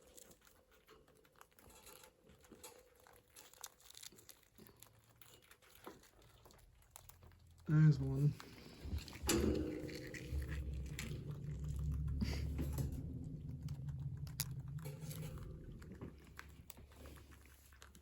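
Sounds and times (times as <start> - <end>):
chewing crunchy snack: 0.0 - 9.2, 13.3 - 18.0
low steady hum: 7.6 - 18.0.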